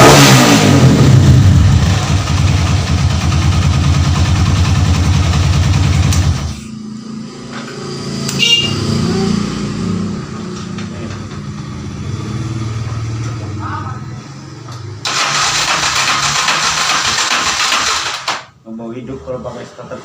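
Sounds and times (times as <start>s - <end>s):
motorcycle engine running: 0.0s - 13.7s.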